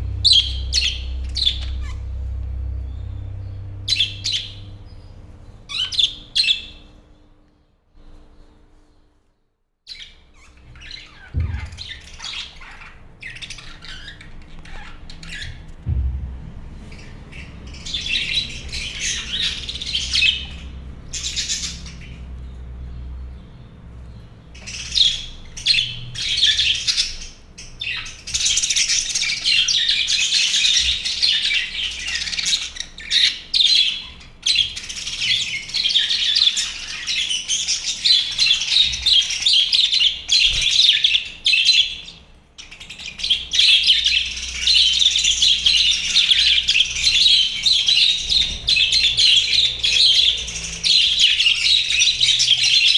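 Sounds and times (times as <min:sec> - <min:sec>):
budgerigars chattering and squawking: 0:00.0 - 0:02.3, 0:02.9 - 0:07.0, 0:09.9 - 0:16.0, 0:16.8 - 0:52.9
low thumps: 0:00.0 - 0:05.5, 0:11.2 - 0:12.8, 0:15.2 - 0:22.4.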